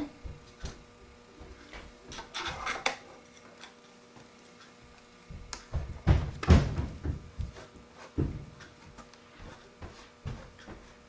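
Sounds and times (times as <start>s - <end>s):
knocks: 5.4s - 7.6s.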